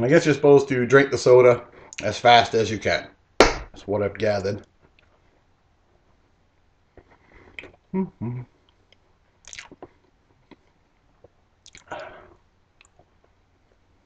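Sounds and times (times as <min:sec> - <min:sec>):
person chewing: 0:09.4 - 0:13.1.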